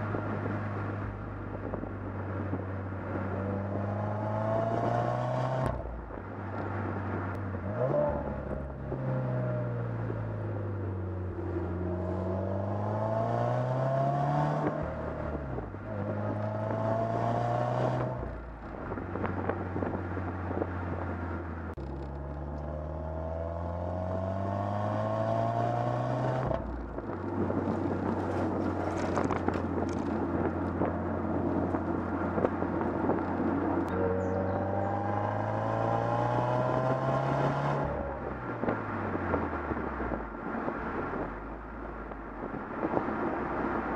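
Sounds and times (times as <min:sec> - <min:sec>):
car exhaust accelerating: 0:00.0 - 0:43.9
wind and road noise: 0:00.0 - 0:43.9.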